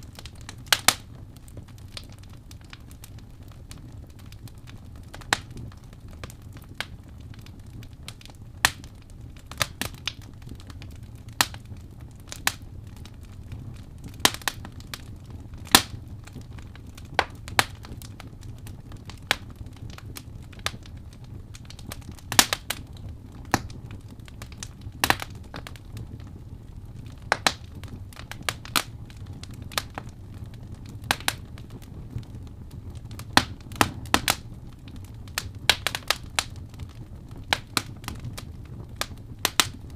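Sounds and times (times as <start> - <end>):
wood fire crackling: 0.0 - 39.9
logs popping: 15.6 - 18.2, 21.6 - 22.8, 24.4 - 26.0, 27.1 - 30.2, 31.0 - 31.7.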